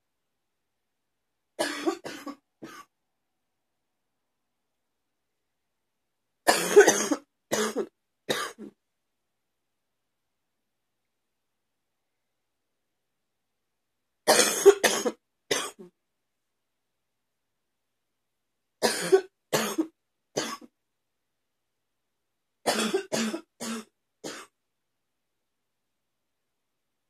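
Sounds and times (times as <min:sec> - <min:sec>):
woman wet coughing: 0:01.6 - 0:02.9, 0:06.5 - 0:08.7, 0:14.3 - 0:15.8, 0:18.8 - 0:20.7, 0:22.7 - 0:24.5.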